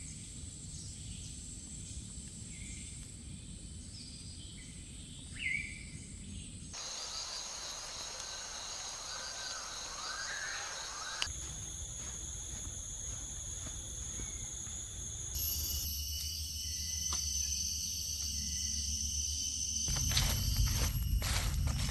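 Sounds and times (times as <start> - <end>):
insects buzzing high-pitched: 6.8 - 21.9
low rumble: 19.9 - 21.9.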